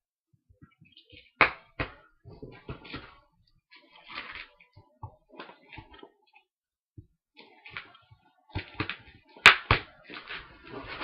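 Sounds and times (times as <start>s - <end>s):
cardboard rustling and scraping: 10.0s - 11.0s.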